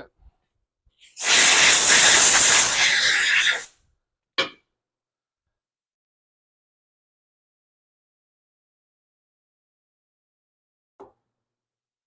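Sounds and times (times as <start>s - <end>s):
compressed air hissing: 1.1s - 3.7s.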